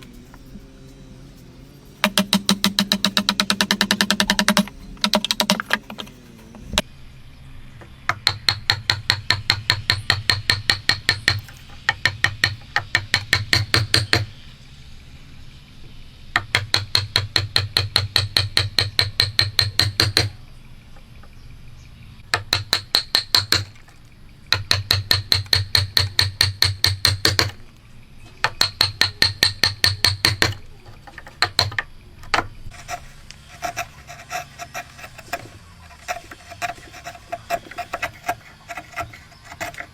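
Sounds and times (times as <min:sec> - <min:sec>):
hammer striking chisel: 0:02.0 - 0:06.1, 0:08.1 - 0:14.3, 0:16.4 - 0:20.3, 0:22.3 - 0:23.7, 0:24.5 - 0:27.6, 0:28.4 - 0:30.6, 0:31.2 - 0:32.5.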